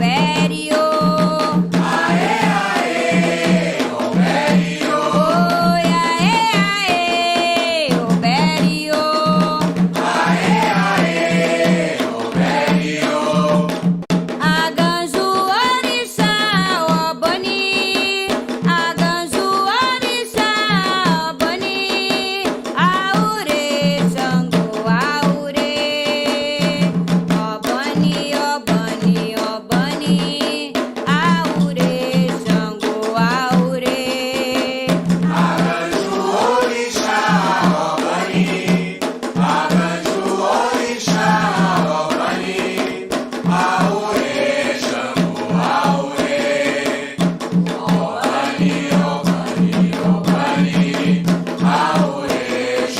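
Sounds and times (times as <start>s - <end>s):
single voice singing: 0.0s - 18.0s, 31.1s - 52.9s
hand drums and percussion beat: 0.0s - 52.9s
chorus of voices singing: 0.8s - 6.3s, 8.0s - 13.9s, 35.2s - 52.9s.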